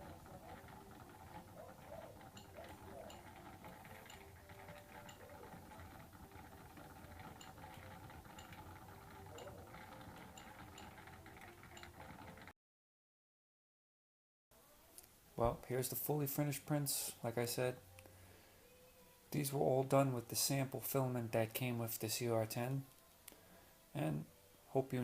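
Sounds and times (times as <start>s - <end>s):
soft irregular ticks: 0.0s - 12.5s.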